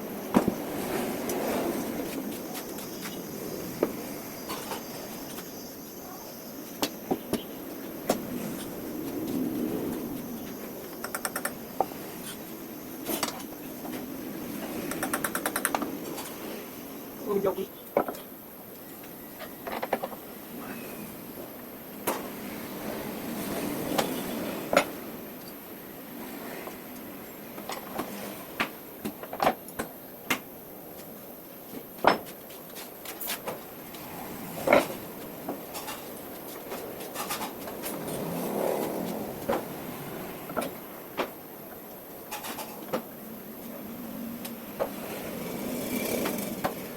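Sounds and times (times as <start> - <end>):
parts clicking and knocking: 11.0 - 11.6, 14.9 - 15.9.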